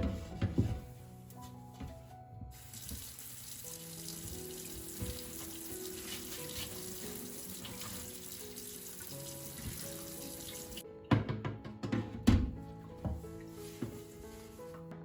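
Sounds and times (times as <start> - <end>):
soft background music: 0.0 - 15.0
tap water running into sink: 2.5 - 10.8.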